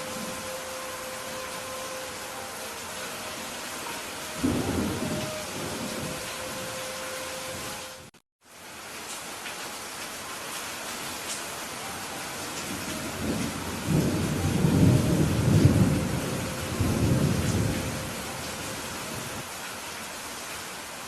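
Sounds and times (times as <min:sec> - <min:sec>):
rain hiss: 0:00.0 - 0:21.0
thunder rumbling: 0:03.8 - 0:08.1, 0:12.4 - 0:19.4.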